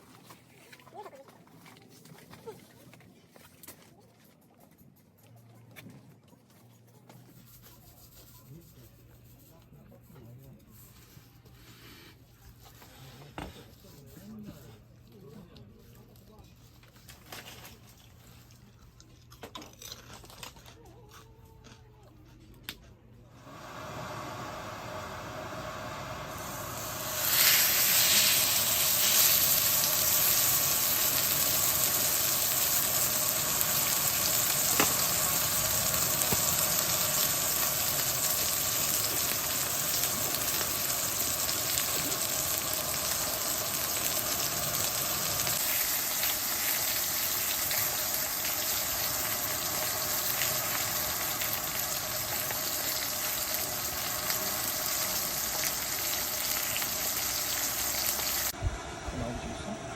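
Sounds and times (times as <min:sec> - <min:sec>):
food sizzling in a pan: 0:23.4 - 0:58.6.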